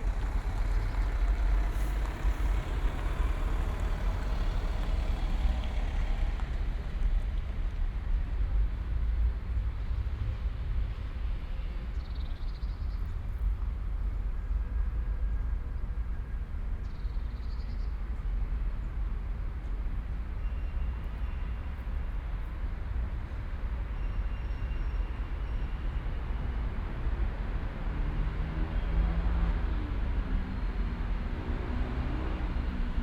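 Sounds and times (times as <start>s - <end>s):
distant traffic rumble: 0.0s - 8.8s
vehicle engine approaching: 0.0s - 8.8s, 26.3s - 33.0s.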